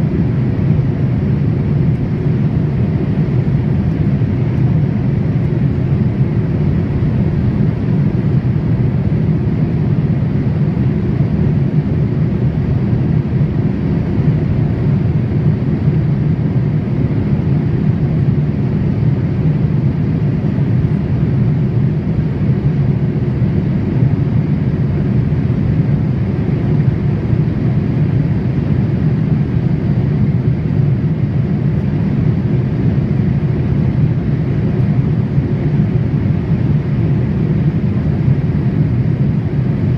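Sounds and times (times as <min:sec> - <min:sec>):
airliner cabin engine drone: 0:00.0 - 0:39.9.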